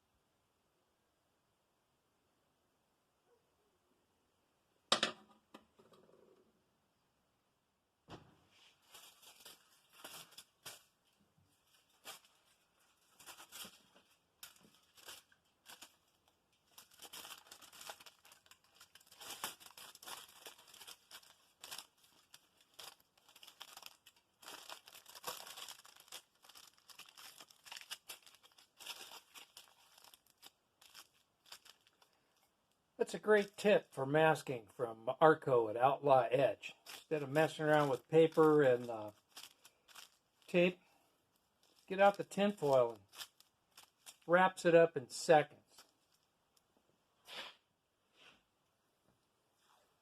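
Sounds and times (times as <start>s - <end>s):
foil crumpling and crinkling: 8.6s - 33.8s, 36.6s - 44.3s, 45.7s - 46.3s.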